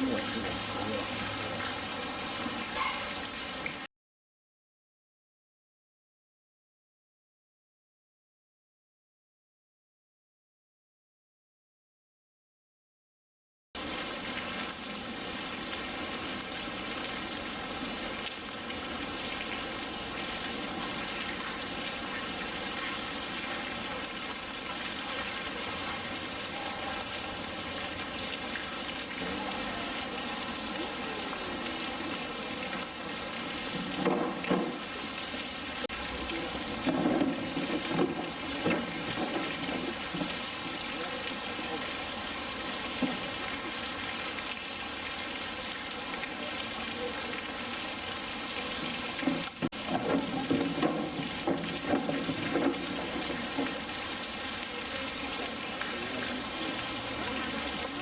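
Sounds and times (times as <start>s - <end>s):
running water: 0.0s - 3.9s, 13.8s - 58.0s
splashing or knocking: 33.7s - 35.0s, 35.9s - 40.6s, 49.2s - 54.2s.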